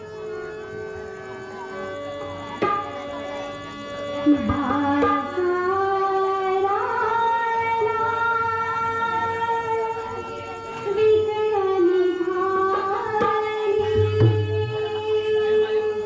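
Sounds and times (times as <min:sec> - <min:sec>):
harmonium notes: 0:00.0 - 0:16.0
hand drum strokes: 0:12.6 - 0:15.0.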